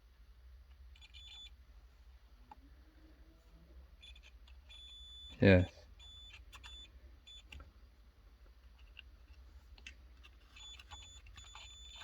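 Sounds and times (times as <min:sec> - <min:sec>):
multimeter beeps: 0:01.0 - 0:01.6, 0:04.0 - 0:05.4, 0:06.0 - 0:07.6, 0:10.5 - 0:12.0.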